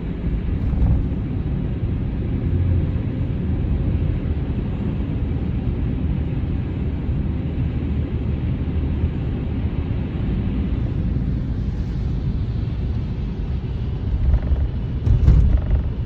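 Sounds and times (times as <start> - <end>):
wind buffeting microphone: 0.1 - 2.3, 10.8 - 16.0.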